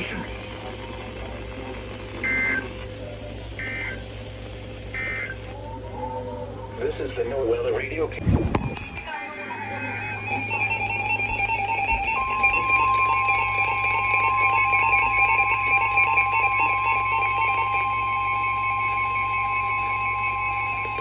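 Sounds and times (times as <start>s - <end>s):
pure warning alarm tone: 2.2s - 5.5s, 8.2s - 21.0s
pulsing electronic tone: 8.2s - 21.0s.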